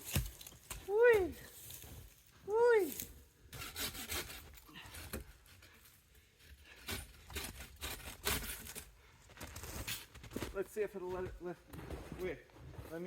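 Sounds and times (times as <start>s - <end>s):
tree branches scraping and rustling: 0.0s - 6.0s, 6.6s - 10.6s.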